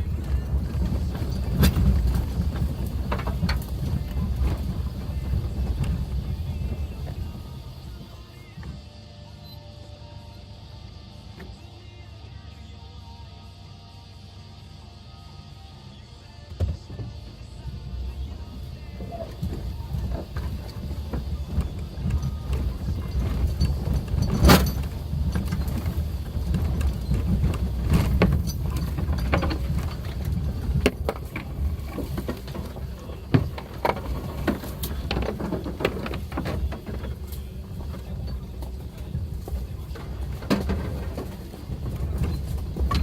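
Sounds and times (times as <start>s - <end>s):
knocks and rattles over bumps: 0.0s - 8.8s, 16.5s - 43.0s
vehicle engine rumble: 0.0s - 43.0s.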